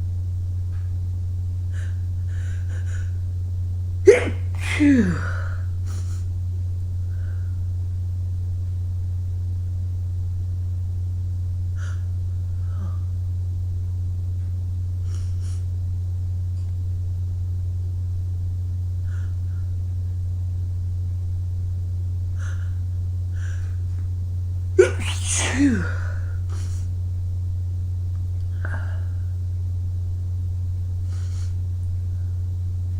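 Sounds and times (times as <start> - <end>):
steady low hum: 0.0 - 32.9
person sniffing and breathing: 1.7 - 3.2, 4.1 - 6.4, 11.8 - 13.2, 15.0 - 15.8, 19.0 - 19.8, 22.3 - 24.0, 24.8 - 27.0, 31.0 - 31.6.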